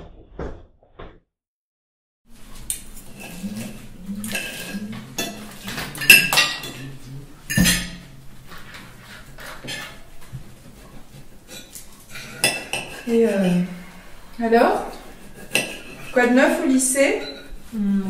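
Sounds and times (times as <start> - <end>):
cutlery clinking on plates: 2.5 - 13.7, 14.9 - 16.3, 17.1 - 17.6.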